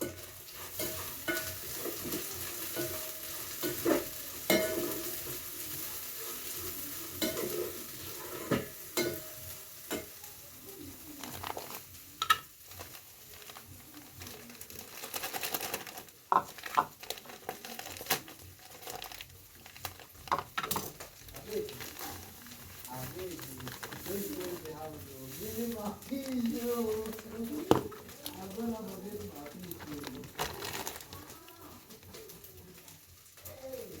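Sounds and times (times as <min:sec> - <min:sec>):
food sizzling in a pan: 0:00.0 - 0:34.0.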